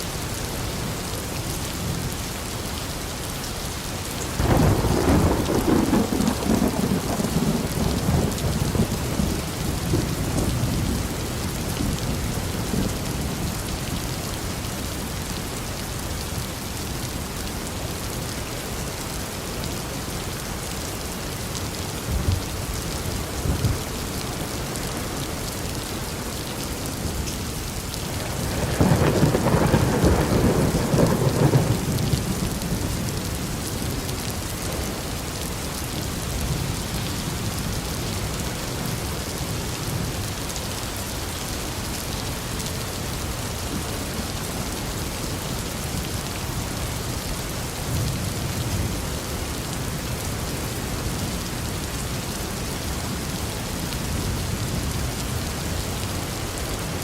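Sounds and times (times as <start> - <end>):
steady rain: 0.0 - 57.0
thunder rumbling: 4.4 - 13.6, 28.0 - 35.7.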